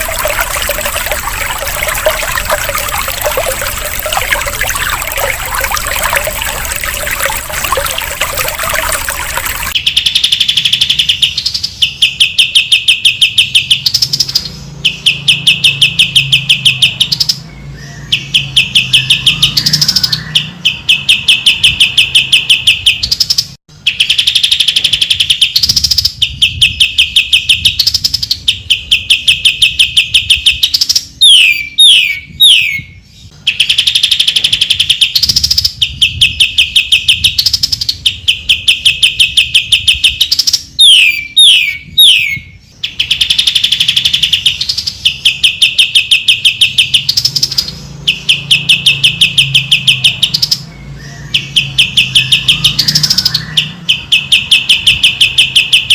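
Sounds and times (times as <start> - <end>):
descending bird whistles: 28.6 - 55.9.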